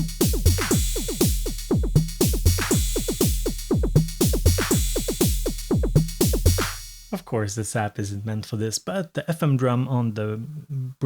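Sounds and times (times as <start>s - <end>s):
drum machine beat: 0.0s - 7.2s.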